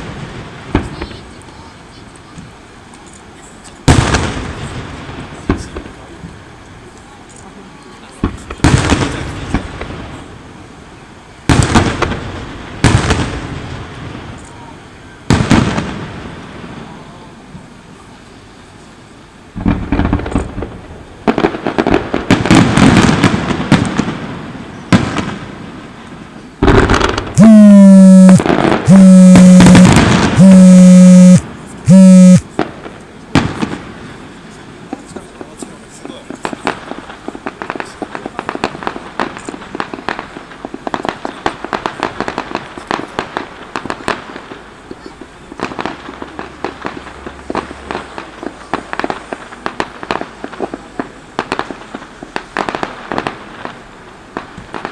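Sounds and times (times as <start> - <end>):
fireworks crackling and popping: 0.0 - 54.9
firework bang: 3.9 - 6.0, 8.2 - 10.2, 11.5 - 14.4, 15.3 - 16.8, 19.6 - 25.5, 26.6 - 30.6
loud distorted tone: 27.4 - 32.5.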